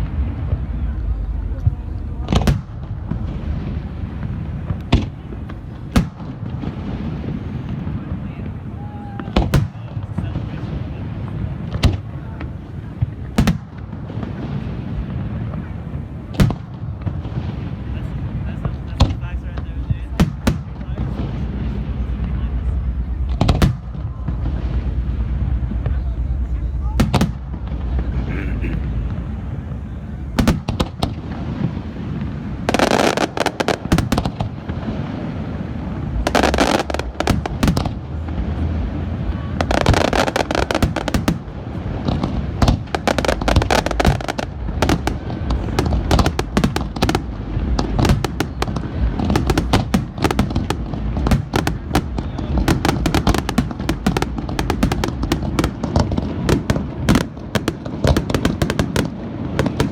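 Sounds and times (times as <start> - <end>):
low rumble: 0.0 - 32.7, 33.6 - 59.9
fireworks crackling: 0.0 - 59.9
rapid barrage of firework reports: 0.0 - 59.9
firework shells bursting: 39.6 - 59.9.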